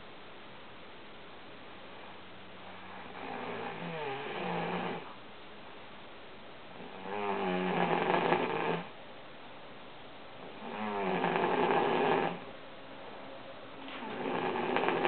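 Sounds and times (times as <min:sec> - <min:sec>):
woman snoring: 0:02.7 - 0:05.2, 0:06.8 - 0:08.9, 0:10.5 - 0:12.4, 0:14.0 - 0:15.0.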